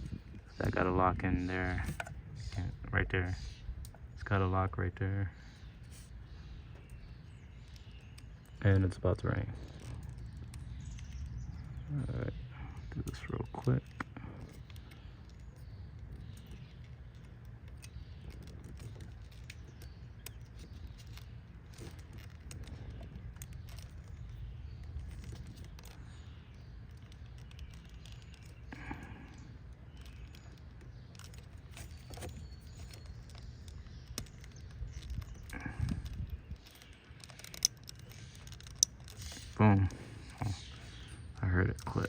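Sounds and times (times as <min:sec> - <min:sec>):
plastic parts clicking and rattling: 0:12.8 - 0:42.0.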